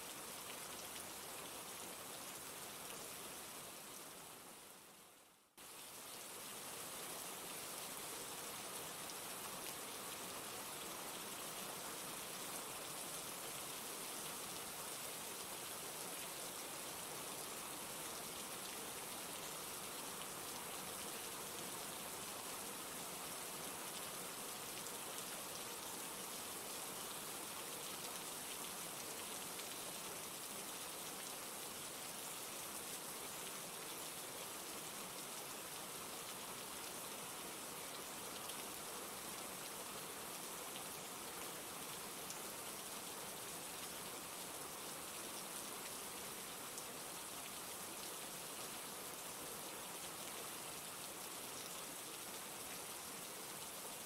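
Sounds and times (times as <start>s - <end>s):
rain hissing on a surface: 0.0s - 54.0s.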